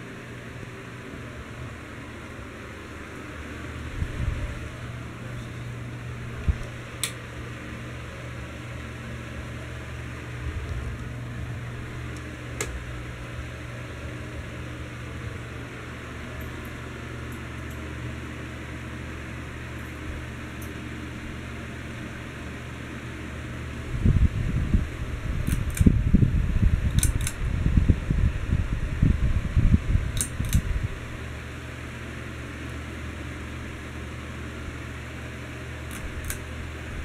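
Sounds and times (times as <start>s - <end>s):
ceiling fan humming: 0.0s - 37.0s
sharp clicks: 6.6s - 7.2s, 25.4s - 25.9s, 26.9s - 27.4s, 30.2s - 30.7s, 35.9s - 36.5s
uneven low rumble: 9.7s - 15.4s.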